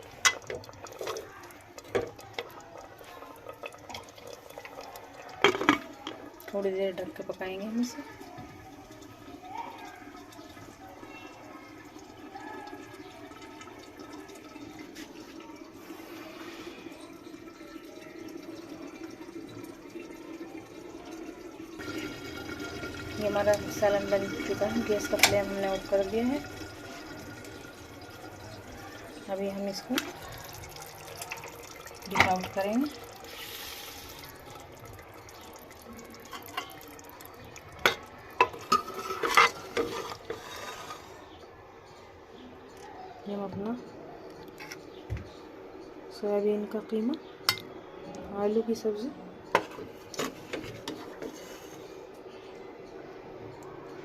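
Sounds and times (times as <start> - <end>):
curry bubbling in a pan: 0.0 - 41.5, 49.5 - 52.3
spoon scraping a cooking pot: 37.9 - 41.2, 49.5 - 51.9.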